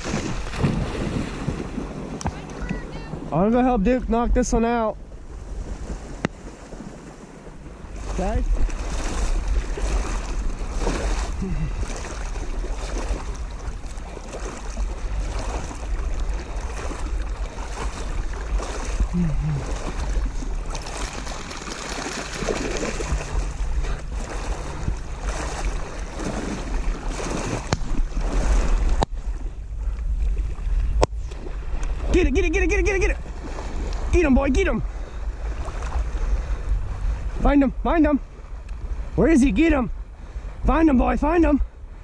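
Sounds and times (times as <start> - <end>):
water rushing: 0.0 - 29.4
wind buffeting microphone: 0.0 - 42.0.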